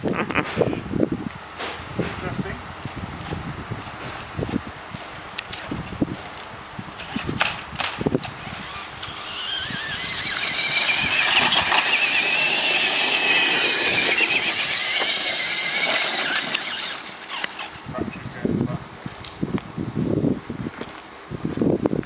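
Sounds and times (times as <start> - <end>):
toy truck motor whining: 8.2 - 18.2.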